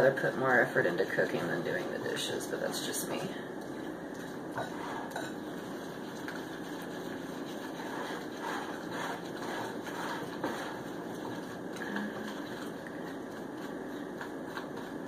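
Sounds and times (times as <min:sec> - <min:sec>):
steady background hum: 0:00.0 - 0:15.0
fork scraping in a bowl of glaze: 0:04.5 - 0:15.0.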